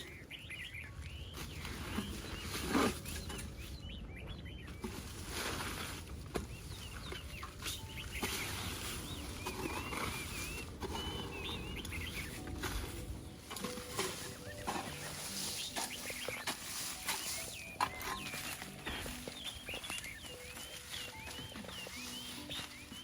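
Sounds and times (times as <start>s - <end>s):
birds chirping: 0.0s - 23.0s.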